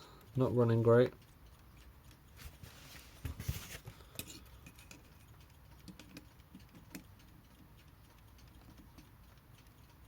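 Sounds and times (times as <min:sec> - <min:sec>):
alarm clock ticking: 0:00.0 - 0:03.1, 0:04.0 - 0:10.0
handling rustle and clunk: 0:02.4 - 0:04.0.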